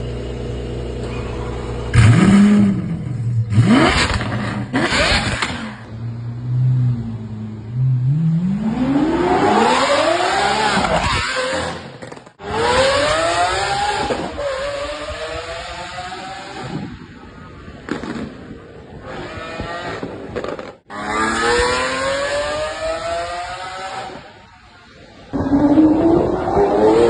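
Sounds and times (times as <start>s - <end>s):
car engine idling and revving: 0.0s - 18.2s.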